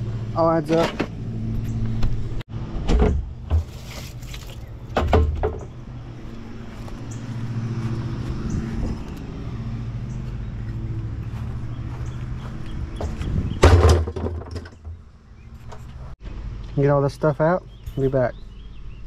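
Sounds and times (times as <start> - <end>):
loud knocks and clunks: 2.0 - 3.8, 4.9 - 5.8, 13.0 - 15.1.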